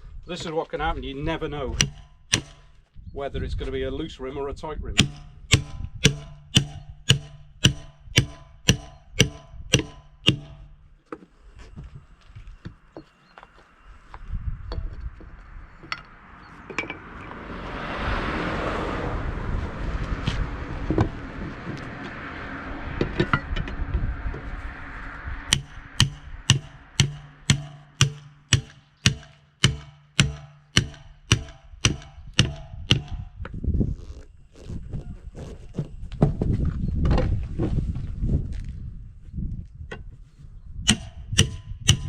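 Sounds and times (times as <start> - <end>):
hammer striking steel wheel rim: 1.7 - 2.8, 5.0 - 10.9, 25.5 - 33.3, 40.9 - 42.0.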